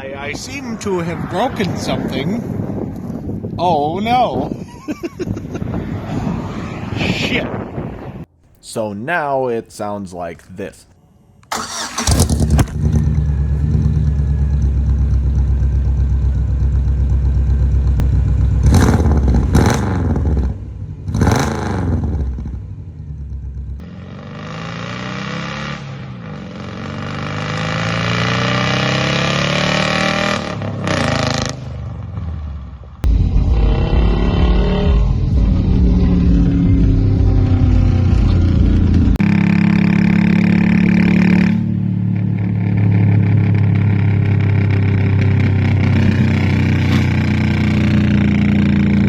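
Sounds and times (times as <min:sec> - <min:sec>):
car engine accelerating: 0:11.4 - 0:49.0
car engine revving: 0:11.4 - 0:49.0.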